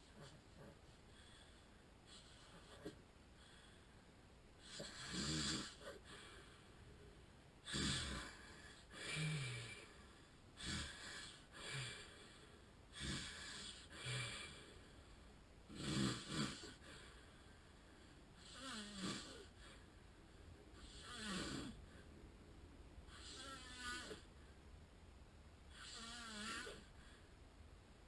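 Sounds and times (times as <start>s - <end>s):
snoring snort: 0.0s - 0.8s, 2.1s - 3.0s, 4.6s - 6.3s, 7.6s - 9.9s, 10.6s - 12.2s, 12.9s - 14.6s, 15.7s - 17.0s, 18.4s - 19.8s, 20.8s - 22.0s, 23.1s - 24.3s, 25.7s - 27.0s
man snoring: 4.6s - 6.2s, 7.6s - 10.0s, 10.6s - 12.3s, 12.9s - 14.7s, 15.7s - 17.0s, 18.4s - 19.6s, 20.8s - 21.9s, 23.1s - 24.3s, 25.7s - 27.0s.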